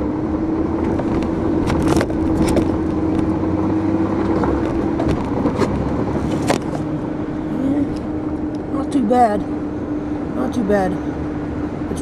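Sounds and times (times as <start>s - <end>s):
truck engine hum and rumble: 0.0s - 12.0s
sharp clicks and knocks: 0.8s - 3.4s, 4.2s - 6.9s.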